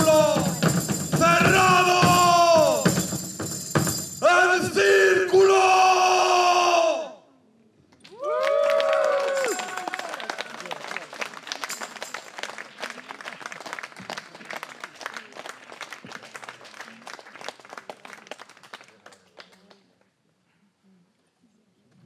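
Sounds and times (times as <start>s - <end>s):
small audience clapping: 8.0s - 20.0s.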